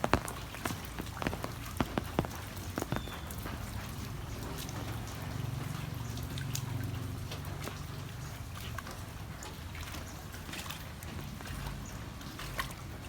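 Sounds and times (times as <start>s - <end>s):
heavy rain falling: 0.0s - 6.2s
close raindrop hits: 0.0s - 6.7s, 10.0s - 13.0s.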